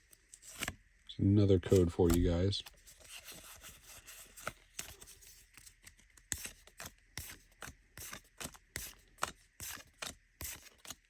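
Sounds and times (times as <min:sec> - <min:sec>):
trading cards being flicked: 0:01.7 - 0:02.4.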